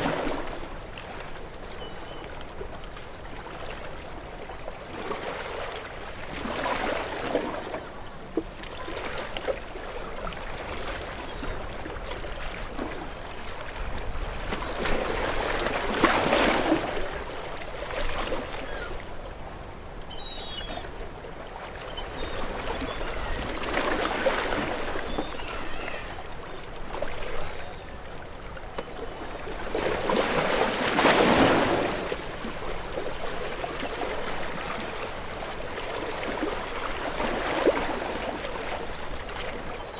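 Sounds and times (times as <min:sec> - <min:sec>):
waves breaking on rocky shore: 0:00.0 - 0:01.4, 0:10.5 - 0:19.0, 0:29.5 - 0:39.9.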